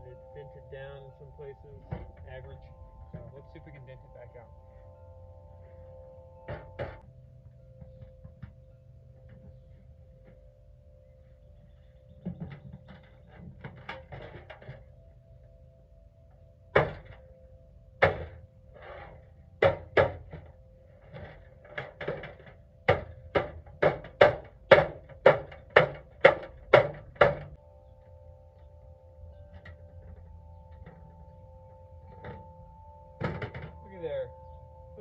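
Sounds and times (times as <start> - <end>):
hammer blows on metal box: 18.0 - 20.5, 21.1 - 27.6.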